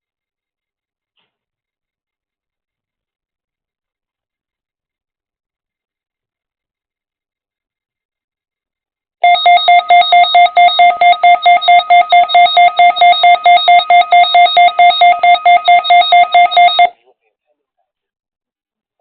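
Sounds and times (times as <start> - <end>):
rapid pulsing alert beep: 9.2 - 16.9.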